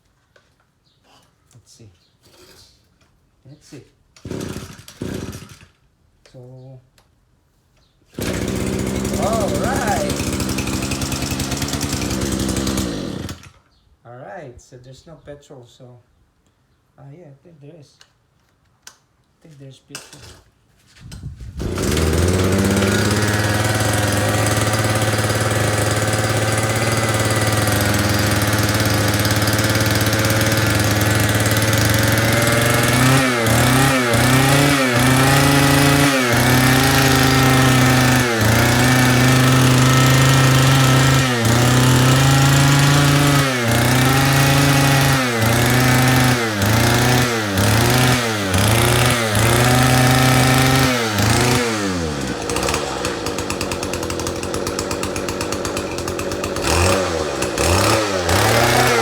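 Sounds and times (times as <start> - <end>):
two-stroke trimmer engine running: 4.2 - 5.7, 8.2 - 13.6, 21.6 - 59.0.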